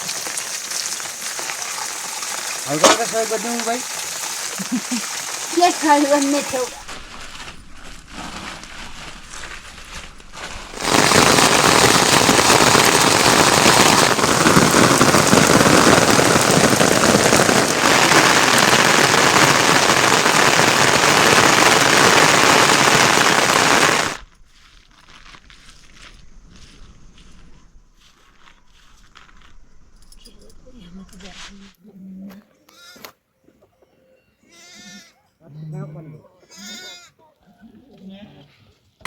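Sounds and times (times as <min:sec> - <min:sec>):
heavy rain: 0:00.0 - 0:07.5, 0:08.2 - 0:24.2.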